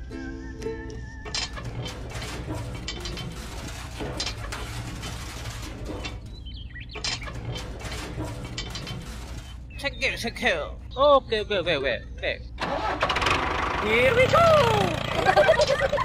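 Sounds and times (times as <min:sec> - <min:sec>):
ukulele music: 0:00.0 - 0:03.4
small geared electric motor rattling: 0:01.4 - 0:09.8, 0:12.6 - 0:16.0.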